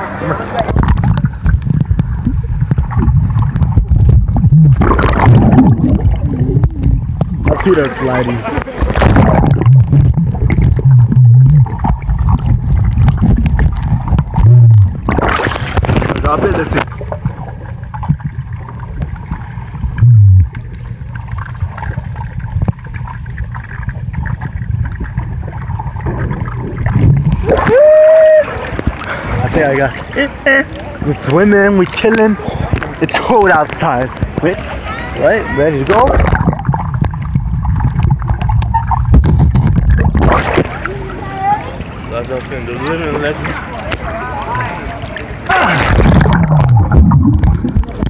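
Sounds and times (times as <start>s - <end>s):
loud low hum: 0.0s - 29.4s, 45.5s - 48.0s
muffled underwater rumble: 0.0s - 48.0s
water splashing and sloshing: 0.0s - 48.0s
faint underwater clicks: 0.4s - 7.7s, 8.4s - 27.7s, 28.6s - 29.4s, 30.0s - 34.9s, 35.8s - 48.0s.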